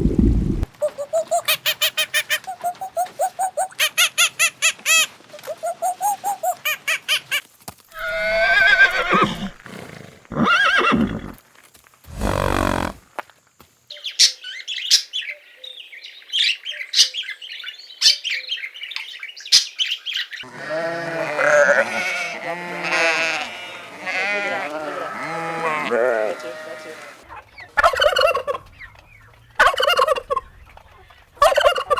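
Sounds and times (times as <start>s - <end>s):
bleating calls: 8.0s - 9.6s, 12.1s - 13.0s, 20.4s - 27.3s
drawn-out animal calls: 8.0s - 9.6s, 12.1s - 13.0s, 20.4s - 28.7s
rough low snort: 12.1s - 13.0s.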